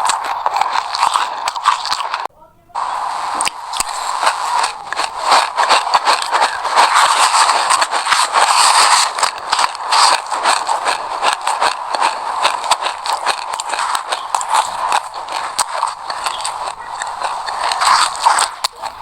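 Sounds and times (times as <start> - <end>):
chewing crunchy seeds: 0.0 - 19.0.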